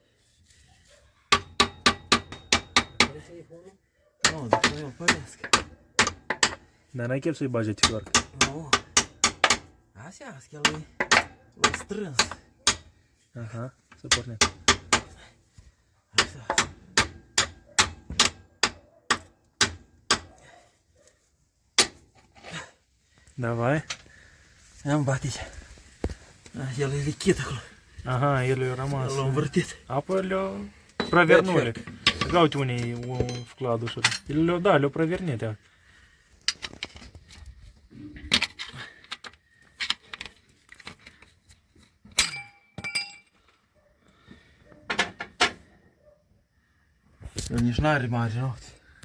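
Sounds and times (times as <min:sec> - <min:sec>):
metal tools clinking and knocking: 0:30.9 - 0:34.8, 0:36.4 - 0:37.5, 0:38.1 - 0:43.6, 0:44.8 - 0:45.6.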